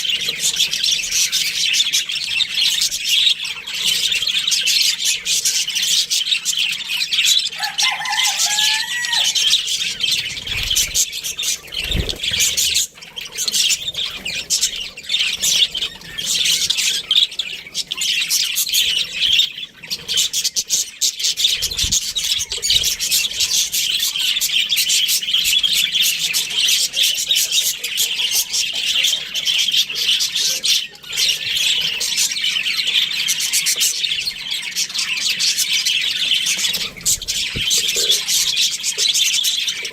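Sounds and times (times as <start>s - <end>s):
budgerigars chattering and chirping: 0.0s - 39.9s.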